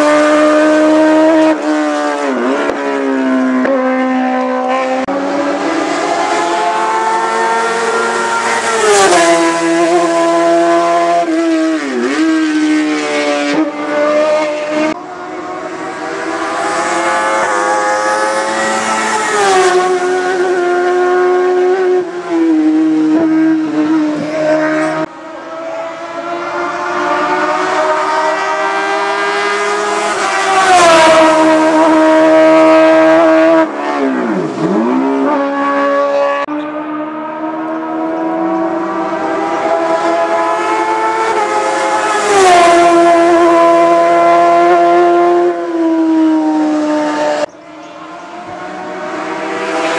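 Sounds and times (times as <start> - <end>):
race car engines at full throttle: 0.0 - 49.9
car passing close by: 23.1 - 49.9.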